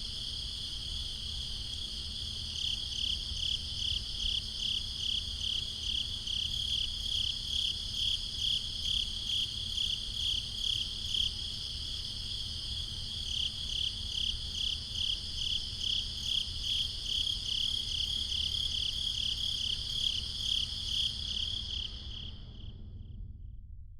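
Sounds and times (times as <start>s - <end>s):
crickets chirping: 0.0s - 23.2s
low rumble: 21.7s - 23.9s.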